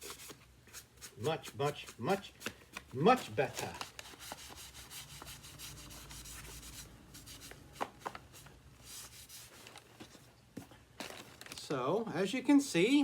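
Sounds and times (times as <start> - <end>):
hand scrubbing plastic: 0.0 - 10.1.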